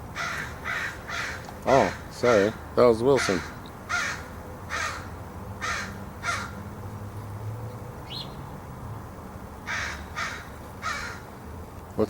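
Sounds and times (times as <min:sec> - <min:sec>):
crow cawing: 0:00.1 - 0:06.7, 0:09.6 - 0:11.3.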